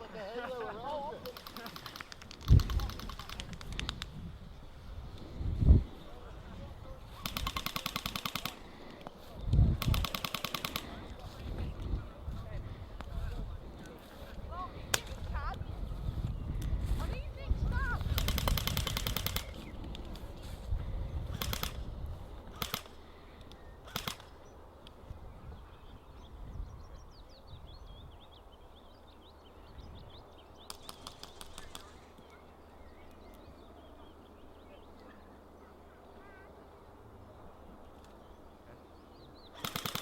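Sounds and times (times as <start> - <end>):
faint birdsong: 0.0 - 40.0
airsoft rifle bursts: 1.2 - 4.0, 7.2 - 9.0, 9.8 - 11.0, 21.3 - 21.8, 22.5 - 23.0, 23.8 - 24.4, 39.5 - 40.0.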